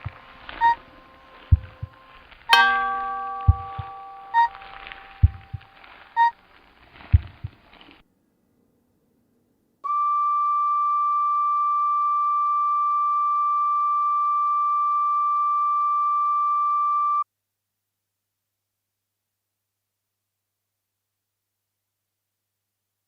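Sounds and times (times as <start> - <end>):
flute holding a steady high tone: 0.0 - 6.4, 9.8 - 17.2.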